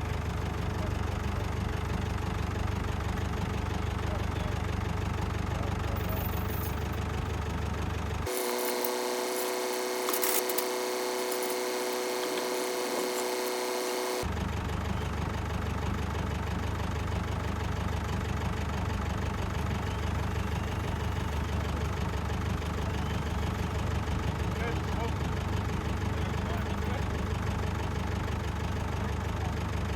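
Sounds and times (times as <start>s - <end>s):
tractor engine idling: 0.0s - 29.9s
steady whine: 8.3s - 14.3s.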